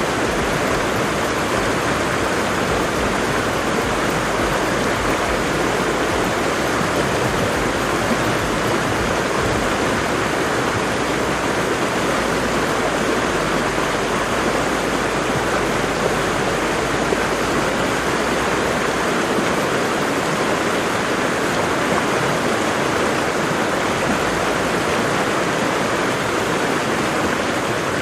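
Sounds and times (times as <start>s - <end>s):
waterfall rushing: 0.0s - 28.0s
low rumble: 0.1s - 11.6s.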